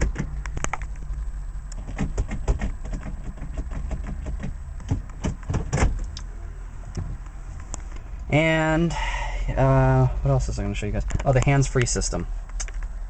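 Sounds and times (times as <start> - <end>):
clicks and knocks of car controls: 0.0 - 6.2
low steady hum: 0.0 - 13.0.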